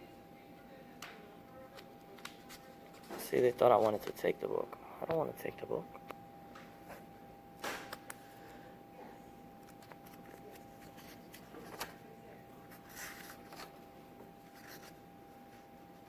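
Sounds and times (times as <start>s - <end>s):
faint steady hum: 0.0s - 16.0s
paper pages rustling: 1.7s - 4.2s, 9.7s - 12.1s, 12.7s - 15.0s.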